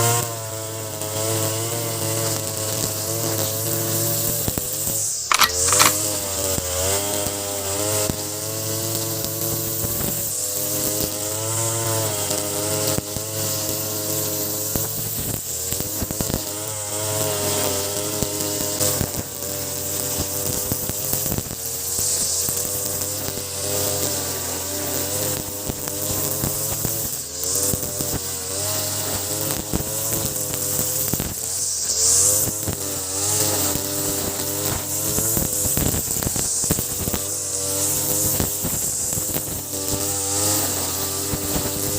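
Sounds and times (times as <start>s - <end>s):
brush cutter cutting grass: 0.0s - 41.9s
sharp ticks: 5.3s - 6.0s.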